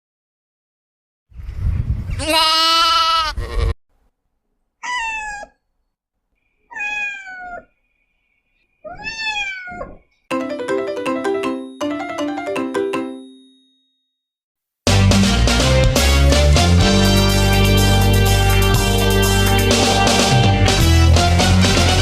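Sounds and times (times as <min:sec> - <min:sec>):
pet animal calling: 0:04.8 - 0:05.6, 0:06.6 - 0:07.8, 0:08.8 - 0:10.1
short chiming tune: 0:10.3 - 0:14.2.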